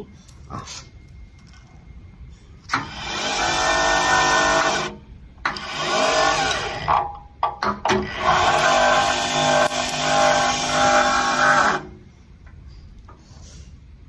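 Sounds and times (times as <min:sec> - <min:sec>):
crimping machine motor running: 0:08.0 - 0:11.9.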